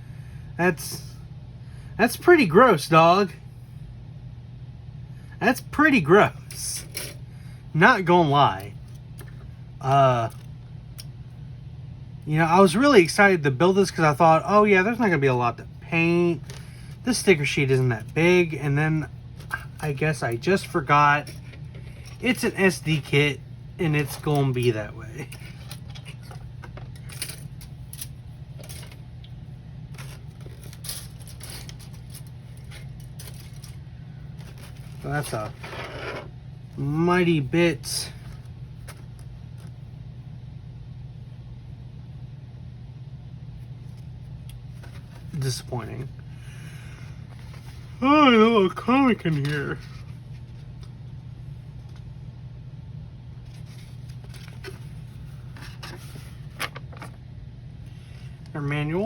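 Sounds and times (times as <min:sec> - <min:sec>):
steady low hum: 0:00.0 - 0:59.0
paper rustling: 0:29.9 - 0:36.1, 0:48.7 - 0:50.9, 0:53.5 - 0:57.2.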